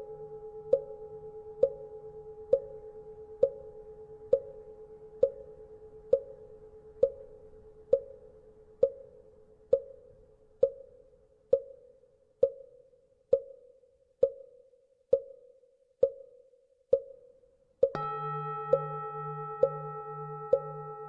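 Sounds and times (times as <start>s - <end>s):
temple bell hum: 18.0s - 21.0s.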